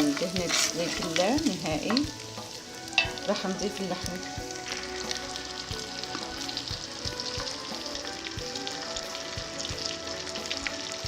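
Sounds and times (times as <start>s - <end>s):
meatballs sizzling in fat: 0.0s - 11.0s.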